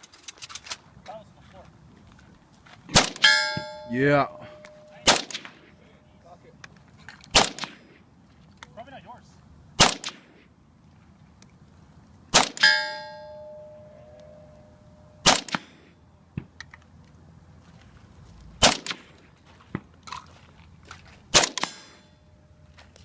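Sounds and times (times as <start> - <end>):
rifle shots: 2.9 - 3.8, 4.8 - 5.6, 7.3 - 7.9, 9.8 - 10.3, 12.3 - 12.8, 15.2 - 15.8, 18.6 - 19.1, 21.3 - 22.0
steel target ringing: 3.0 - 5.5, 12.4 - 15.4.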